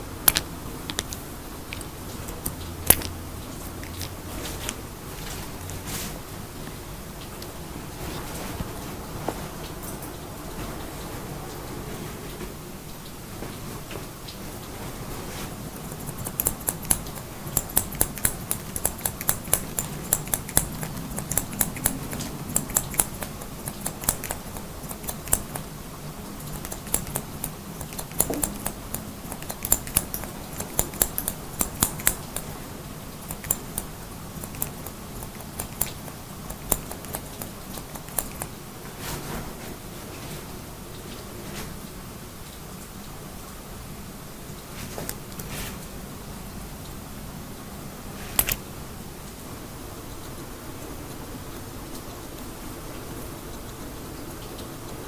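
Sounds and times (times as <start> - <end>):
scissors snipping: 0.2 - 4.8, 15.6 - 25.7, 26.4 - 32.6, 33.2 - 38.5, 48.4 - 48.6.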